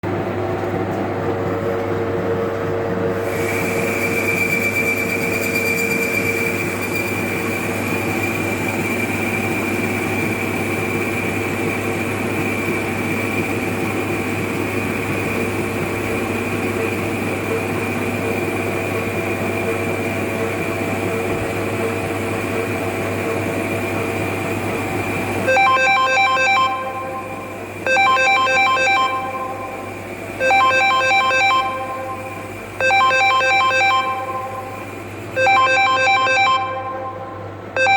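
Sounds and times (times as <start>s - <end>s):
metal lathe humming: 0.1s - 35.4s
phone ringtone: 25.5s - 37.9s.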